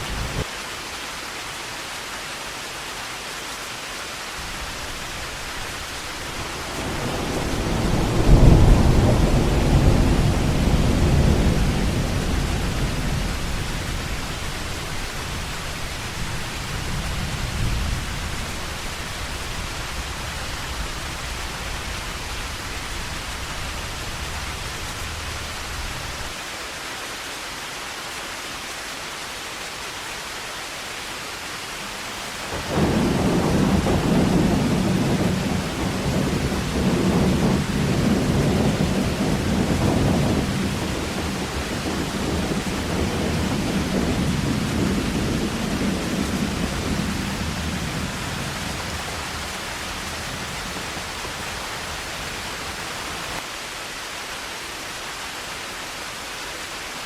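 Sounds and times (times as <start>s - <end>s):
heavy rain falling: 0.0s - 57.0s
deep rumble of thunder: 4.6s - 26.3s, 32.5s - 52.7s.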